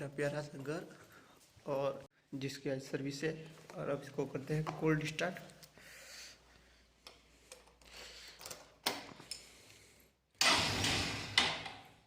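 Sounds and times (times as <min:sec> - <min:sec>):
motorcycle engine cranking and coughing: 0:07.1 - 0:12.0.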